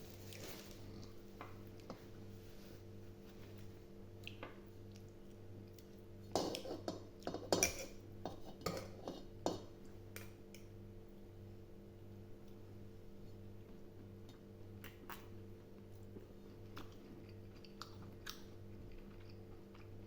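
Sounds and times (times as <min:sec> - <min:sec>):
low electrical hum: 0:00.0 - 0:20.0.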